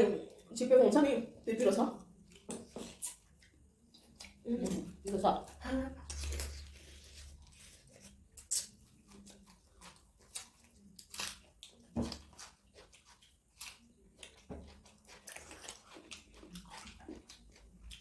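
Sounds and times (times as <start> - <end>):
people chewing food: 0.0 - 18.0.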